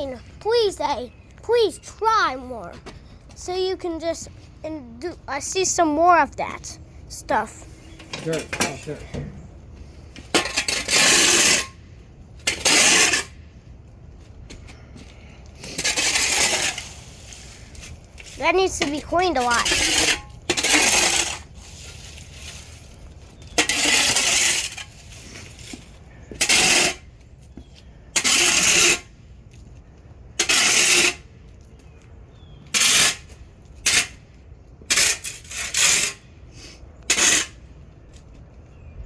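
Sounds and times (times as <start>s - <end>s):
blade scraping pavement: 0.0s - 13.7s, 14.5s - 38.8s.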